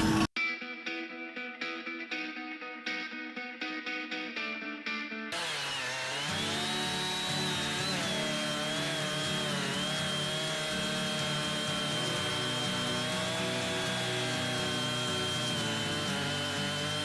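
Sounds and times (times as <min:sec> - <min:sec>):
chainsaw engine revving: 0:05.3 - 0:17.0.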